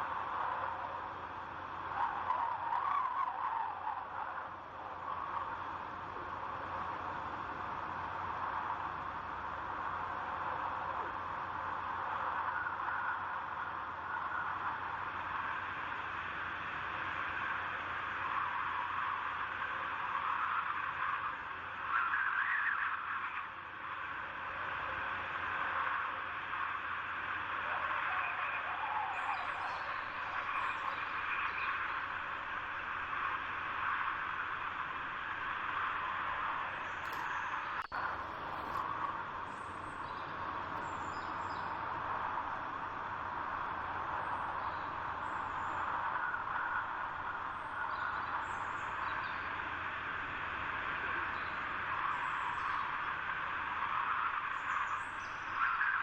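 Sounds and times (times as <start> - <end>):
rushing wind: 29.5 - 55.0
faint high bird chirps: 36.8 - 41.9
bird chirps: 39.5 - 41.8.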